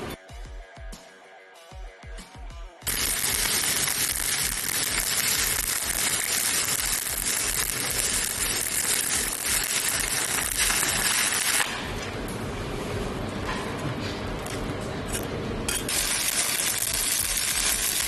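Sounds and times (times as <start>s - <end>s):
welding arc crackling: 2.8s - 12.4s, 15.7s - 18.0s.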